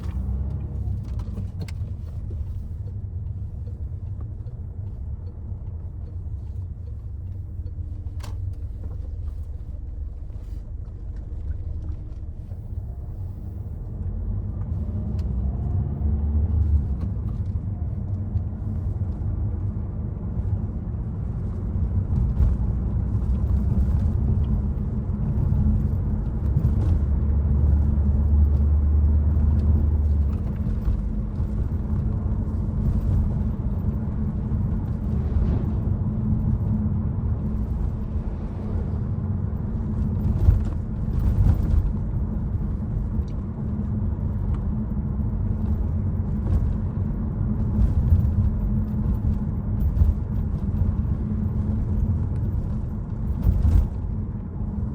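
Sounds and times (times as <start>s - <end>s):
car engine and road rumble: 0.0s - 54.9s
deeper drone: 32.7s - 41.8s.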